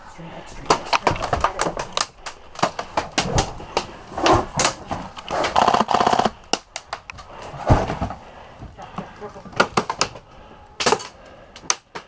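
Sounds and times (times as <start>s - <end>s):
airsoft gun full-auto burst: 5.6s - 6.4s.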